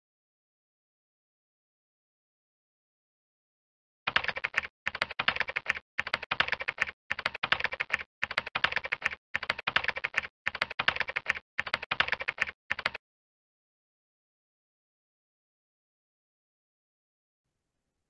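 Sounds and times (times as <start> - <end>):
rapid keyboard typing: 4.1 - 13.0.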